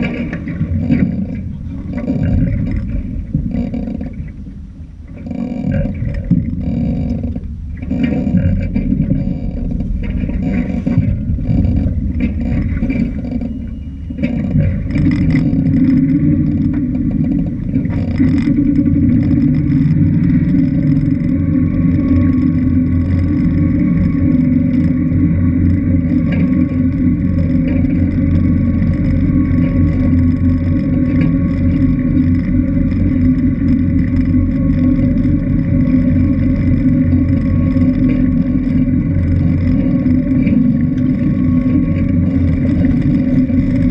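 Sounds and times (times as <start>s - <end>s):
motorboat engine running: 0.0s - 43.9s.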